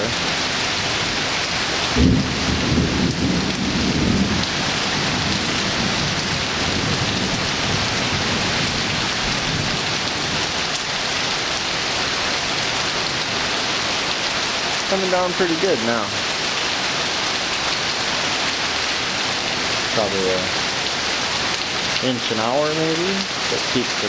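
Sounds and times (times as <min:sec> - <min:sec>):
heavy rain falling: 0:00.0 - 0:24.0
low rumble of thunder: 0:01.9 - 0:10.6.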